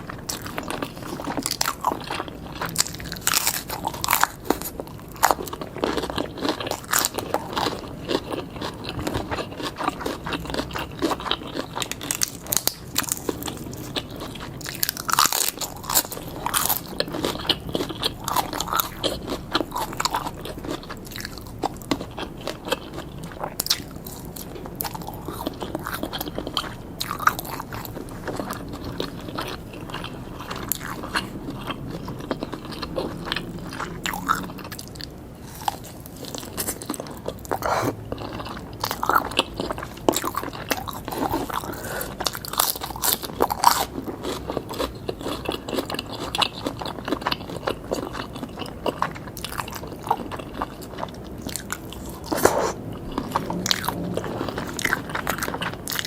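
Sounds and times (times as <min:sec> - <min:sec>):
chewing and biting meat: 0:00.0 - 0:56.0
wet mouth sounds: 0:51.9 - 0:55.7.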